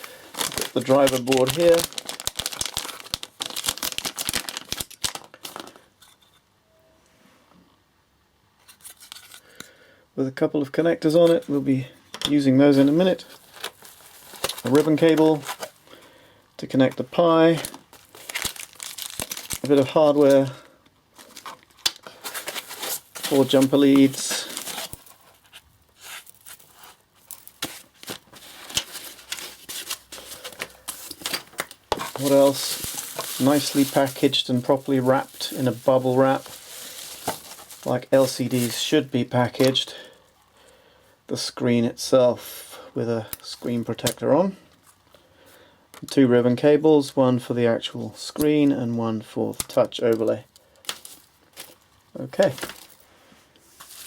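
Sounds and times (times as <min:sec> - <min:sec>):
packaging rustling and crinkling: 0:00.0 - 0:05.9, 0:12.3 - 0:16.1, 0:16.7 - 0:39.9, 0:49.6 - 0:54.0.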